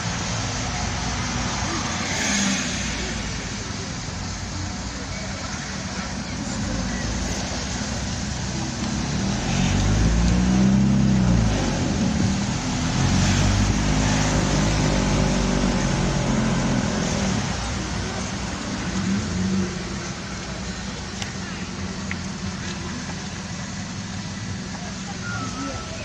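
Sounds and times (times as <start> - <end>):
road noise: 0.0 - 26.0.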